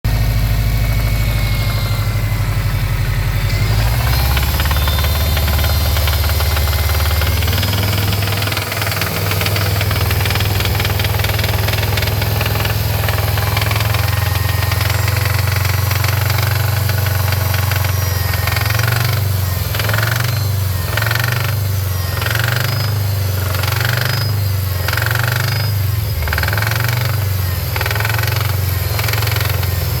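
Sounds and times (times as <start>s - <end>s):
car engine idling: 0.0s - 30.0s
metallic knocking noise: 4.0s - 20.3s.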